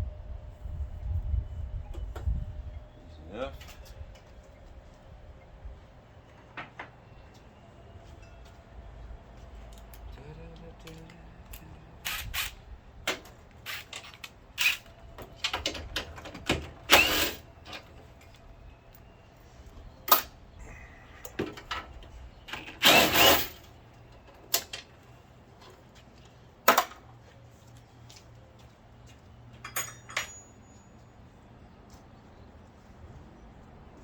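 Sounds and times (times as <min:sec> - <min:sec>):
metal parts rattling: 0:22.5 - 0:23.7
metal tools clinking: 0:22.5 - 0:23.7, 0:29.5 - 0:31.1.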